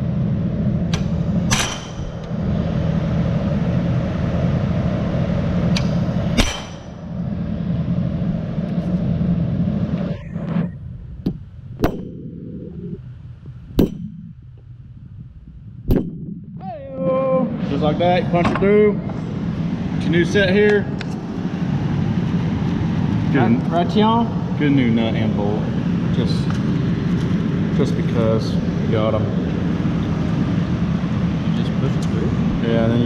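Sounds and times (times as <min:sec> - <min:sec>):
fan whirring: 0:00.0 - 0:33.0
hammer striking steel: 0:00.9 - 0:02.4, 0:05.8 - 0:07.2, 0:11.8 - 0:12.4, 0:13.8 - 0:14.4.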